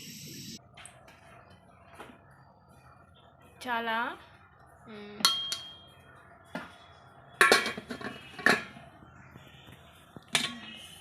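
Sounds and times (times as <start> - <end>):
spoon clinking on metal dishes: 5.2 - 6.0, 7.4 - 8.8.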